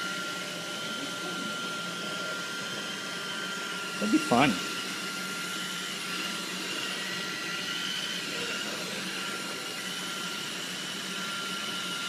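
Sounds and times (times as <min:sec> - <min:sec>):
thin high whine: 0:04.0 - 0:04.9.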